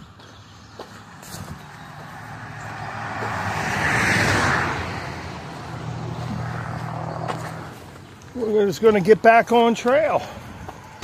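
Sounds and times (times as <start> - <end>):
vehicle passing: 0.6 - 8.8.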